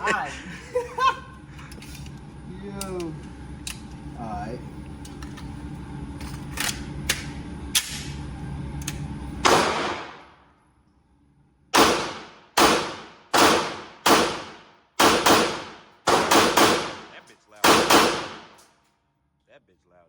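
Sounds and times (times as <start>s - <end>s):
loud pistol shots: 9.4s - 10.3s, 11.8s - 18.6s.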